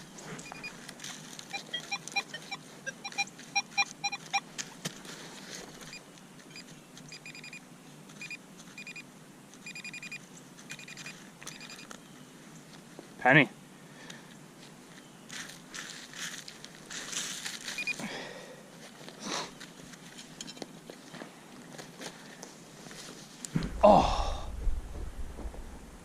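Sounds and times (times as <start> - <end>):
metal detector beeps: 0.4 - 0.8, 1.5 - 4.4, 5.8 - 7.6, 8.2 - 9.0, 9.6 - 12.0, 17.7 - 18.0.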